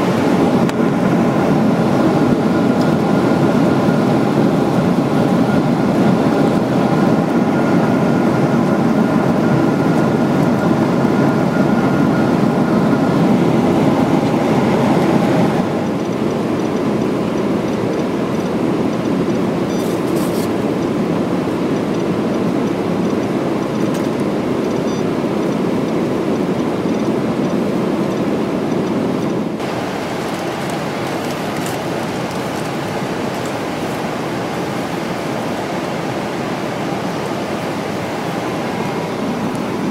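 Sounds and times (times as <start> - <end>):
jet engine and airflow roar: 0.0 - 39.9
faint high whine: 29.6 - 39.9.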